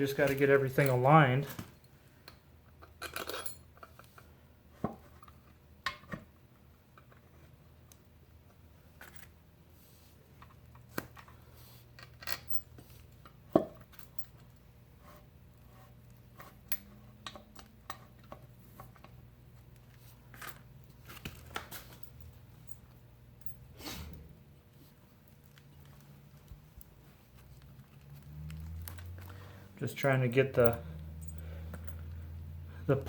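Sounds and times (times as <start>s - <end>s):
metal clinks and knocks: 27.9s - 32.4s.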